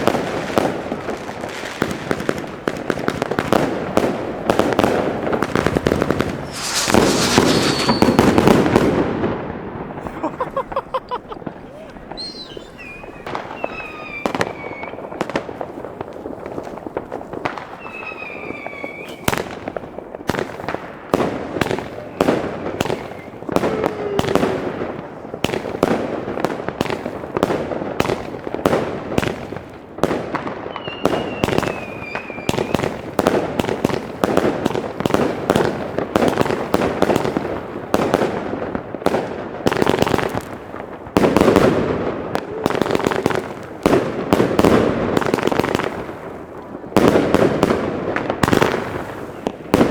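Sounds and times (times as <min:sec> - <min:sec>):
firework shots and bangs: 0:00.0 - 0:49.9
falling firework whistles: 0:06.0 - 0:09.1, 0:12.1 - 0:15.4, 0:17.4 - 0:19.6, 0:22.0 - 0:24.7, 0:30.6 - 0:33.1.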